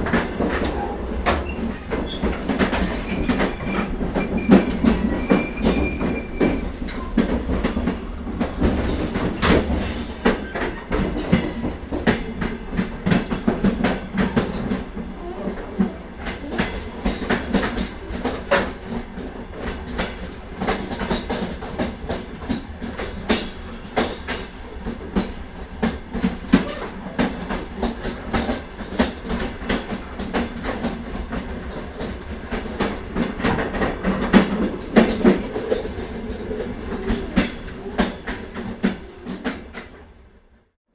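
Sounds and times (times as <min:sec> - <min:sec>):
train rumbling along track: 0:00.0 - 0:40.7.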